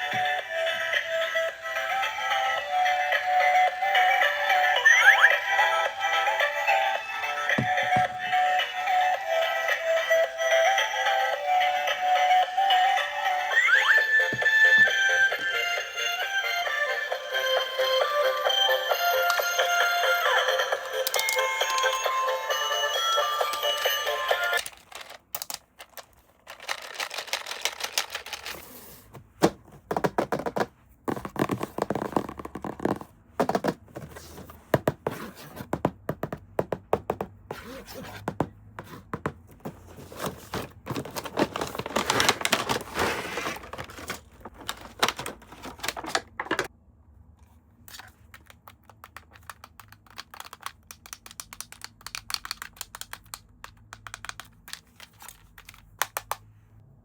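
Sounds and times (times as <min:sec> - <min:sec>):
packaging crinkling and rustling: 0:24.6 - 0:28.8, 0:39.7 - 0:46.7.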